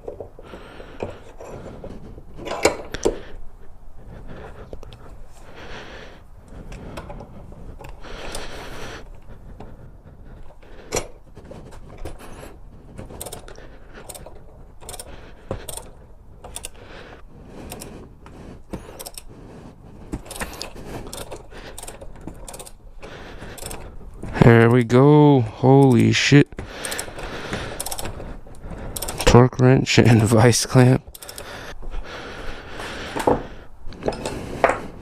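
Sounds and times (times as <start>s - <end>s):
metal tools clinking: 2.4s - 3.1s.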